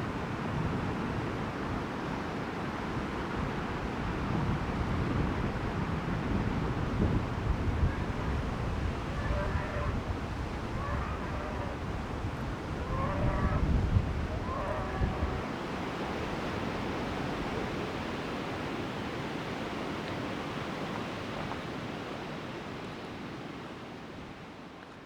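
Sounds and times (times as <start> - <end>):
wind buffeting microphone: 3.0 - 19.4
strong wind blowing: 4.1 - 19.8.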